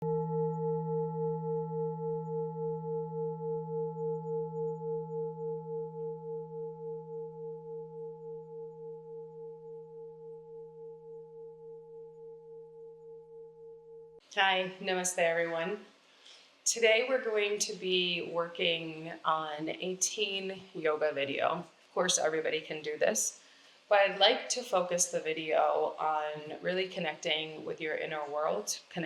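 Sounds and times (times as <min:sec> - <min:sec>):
singing bowl ringing: 0:00.0 - 0:14.3.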